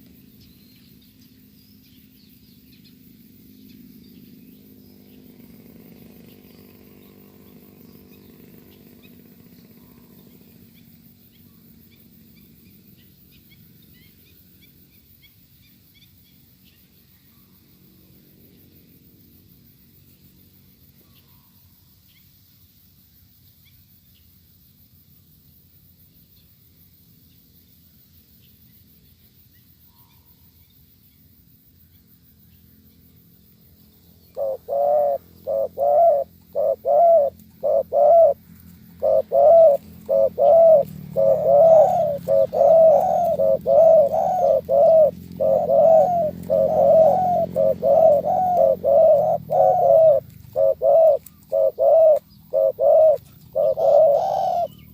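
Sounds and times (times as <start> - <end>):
faint background hum: 0.0 - 54.9
dove cooing: 34.3 - 54.9.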